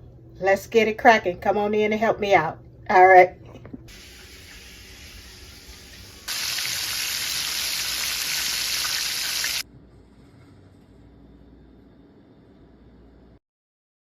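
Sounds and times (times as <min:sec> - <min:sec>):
kitchen tap running into sink: 0:03.9 - 0:09.6.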